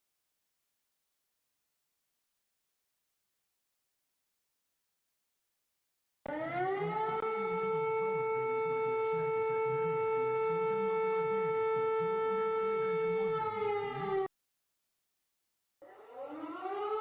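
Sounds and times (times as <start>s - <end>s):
emergency alert siren tone: 6.3s - 14.3s, 15.9s - 17.0s.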